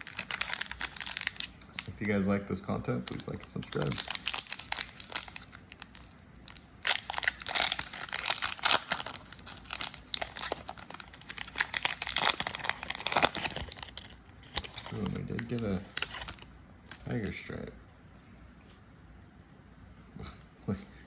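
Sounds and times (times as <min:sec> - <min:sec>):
card pack wrapper crinkling: 0:00.0 - 0:02.2, 0:03.0 - 0:17.4.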